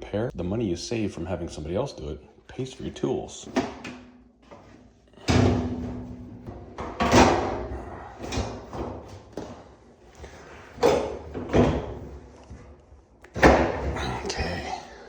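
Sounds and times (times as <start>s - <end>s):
dryer parts clunking: 3.4s - 14.2s.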